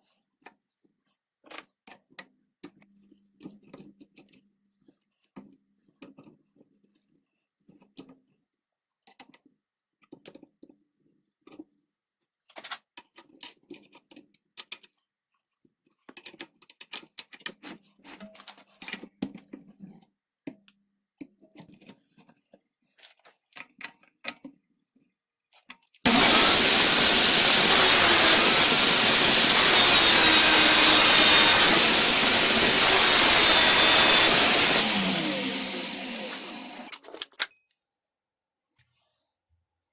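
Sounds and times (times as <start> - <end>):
angle grinder running: 26.1 - 36.9.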